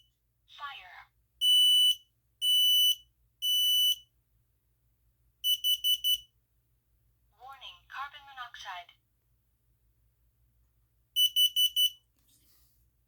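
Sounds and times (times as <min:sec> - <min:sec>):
high-pitched alarm beeps: 0:01.4 - 0:04.0, 0:05.5 - 0:06.2, 0:11.2 - 0:12.0
short quick alarm beeps: 0:11.2 - 0:12.0.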